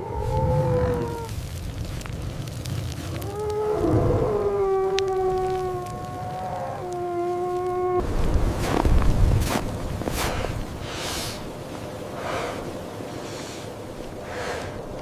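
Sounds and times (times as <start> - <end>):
wolf howling: 0.0 - 1.3, 3.2 - 8.0.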